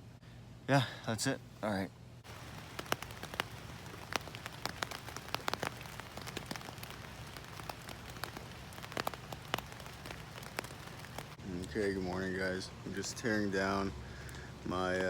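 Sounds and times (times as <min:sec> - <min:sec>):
rain hissing on a tarp: 0:02.2 - 0:15.0
sharp drip taps: 0:02.3 - 0:11.4.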